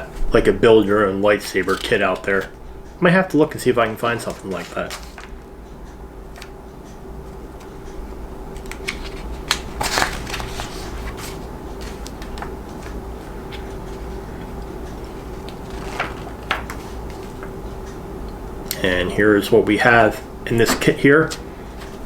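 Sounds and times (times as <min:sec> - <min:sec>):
steady low hum: 0:00.0 - 0:22.0
paper and packaging rustling: 0:01.6 - 0:02.5, 0:03.8 - 0:05.4, 0:08.6 - 0:13.0.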